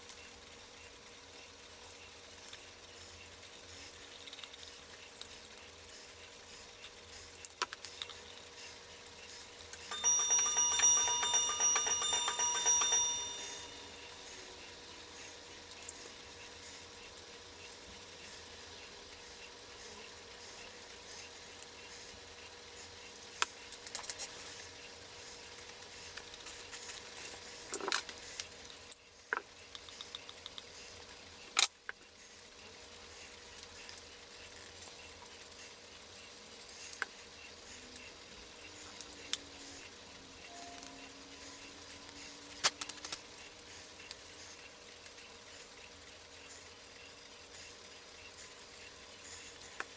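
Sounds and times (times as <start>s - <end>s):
metal bell ringing: 9.9s - 14.1s.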